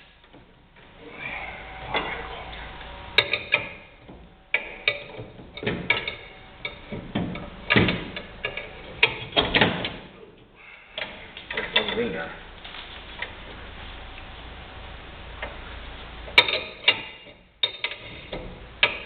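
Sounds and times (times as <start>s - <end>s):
heavy metal clunks: 3.0s - 10.1s.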